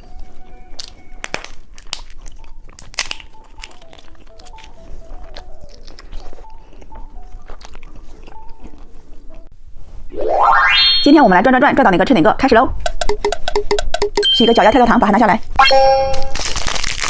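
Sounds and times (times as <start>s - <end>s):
candy crunching: 0.0s - 9.5s, 16.0s - 17.0s.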